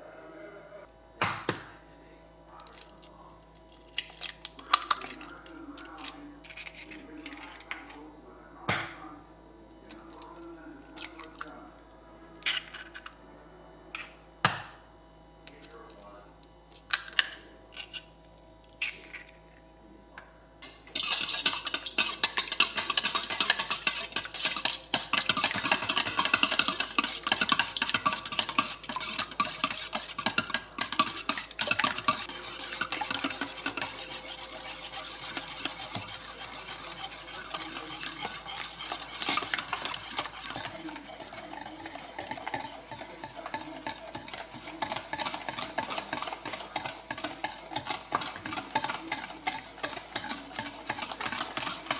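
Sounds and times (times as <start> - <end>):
utensil scraping mixing bowl: 4.6 - 8.0, 20.6 - 51.9.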